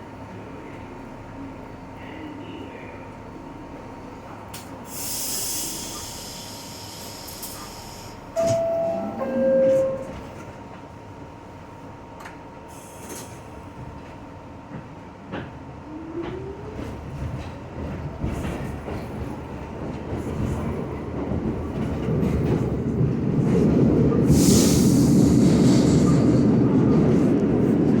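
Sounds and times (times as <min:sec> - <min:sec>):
subway train rail noise: 0:00.0 - 0:28.0
air hiss: 0:04.9 - 0:08.2, 0:24.3 - 0:26.2.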